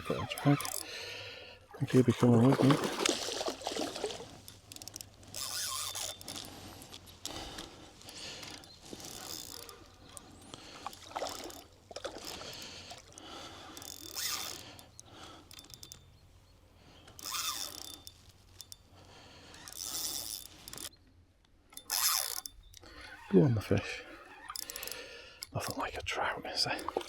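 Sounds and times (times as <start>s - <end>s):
fishing reel ratchet clicking: 0.3s - 0.9s, 4.4s - 16.1s, 17.1s - 18.9s, 19.5s - 20.9s, 21.7s - 23.2s, 24.2s - 25.5s.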